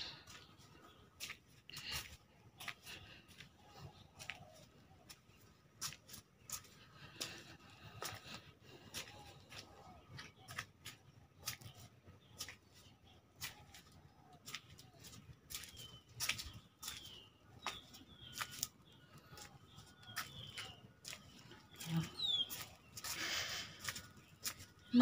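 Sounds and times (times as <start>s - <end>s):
small bird chirping: 8.9s - 25.0s.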